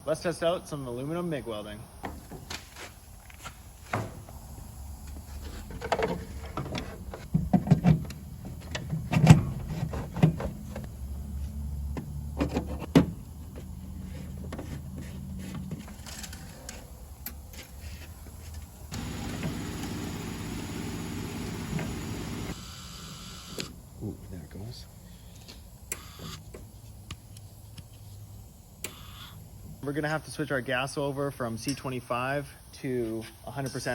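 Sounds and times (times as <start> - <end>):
steady machine hum: 18.8 - 25.9.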